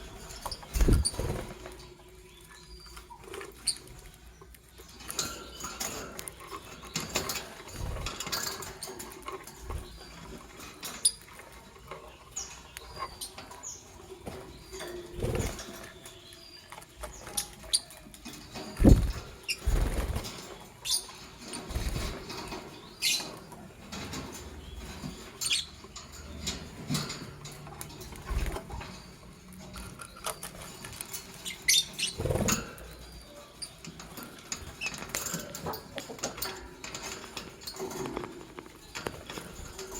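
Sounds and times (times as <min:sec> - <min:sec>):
lovebirds squeaky chirps: 0:00.0 - 0:01.5, 0:02.3 - 0:04.2, 0:14.6 - 0:18.0, 0:24.6 - 0:26.3, 0:30.0 - 0:35.0.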